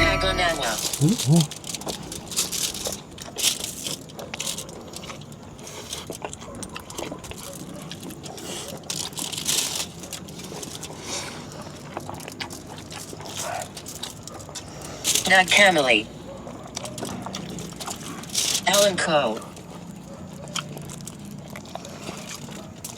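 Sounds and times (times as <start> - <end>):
person chewing and crunching food: 0.0 - 22.9.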